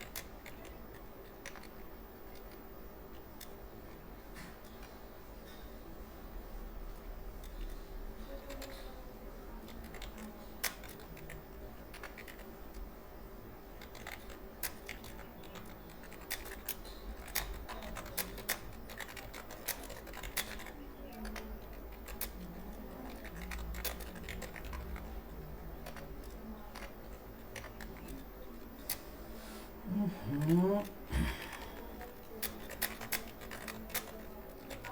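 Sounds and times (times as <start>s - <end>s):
faint low hum: 0.0s - 34.9s
keyboard typing: 7.4s - 13.0s, 13.8s - 29.2s, 29.8s - 34.9s.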